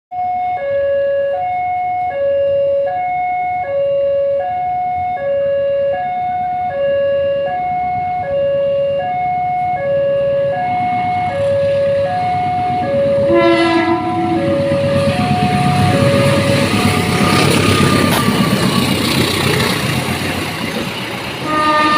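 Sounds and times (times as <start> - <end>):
level crossing two-tone alarm: 0.2 - 18.0
low held tone: 0.2 - 18.8
train rumbling: 9.0 - 21.9.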